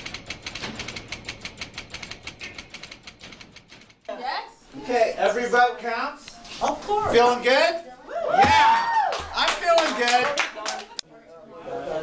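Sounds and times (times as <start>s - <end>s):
rapid mechanical clicking: 0.0s - 4.1s.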